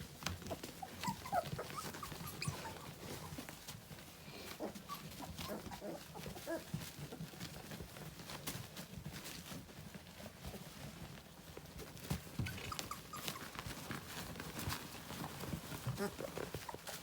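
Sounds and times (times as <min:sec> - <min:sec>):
small clicks and scuffs: 0:00.0 - 0:17.0
puppies squeaking and whimpering: 0:00.4 - 0:06.9, 0:12.4 - 0:17.0.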